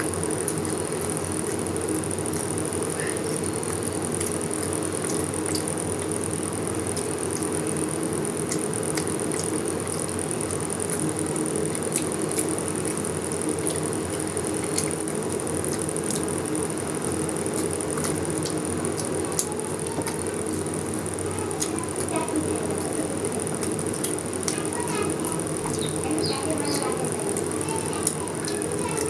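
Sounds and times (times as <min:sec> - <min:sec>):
background hum: 0:00.0 - 0:29.0
chewing and handling food: 0:00.0 - 0:29.0
high whine: 0:00.0 - 0:29.0.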